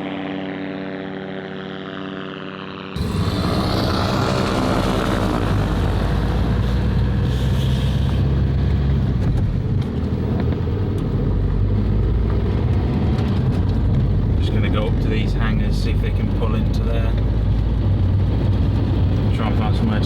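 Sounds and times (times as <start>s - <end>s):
engine running loud: 2.8s - 20.0s
low rumble: 3.0s - 9.8s
wind noise: 3.0s - 15.4s.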